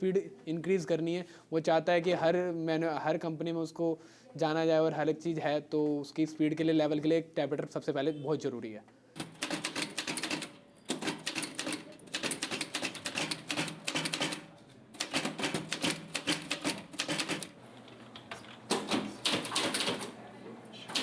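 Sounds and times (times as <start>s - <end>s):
manual typewriter typing: 9.2s - 17.6s, 18.2s - 20.2s.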